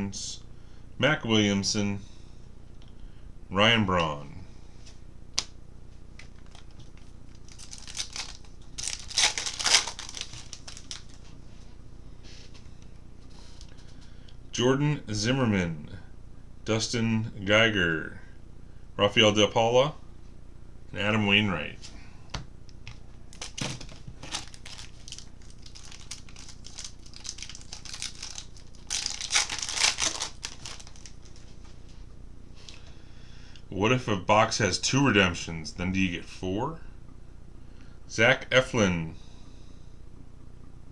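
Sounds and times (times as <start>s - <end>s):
wrapper tearing and crinkling: 6.2s - 11.2s, 23.3s - 31.5s.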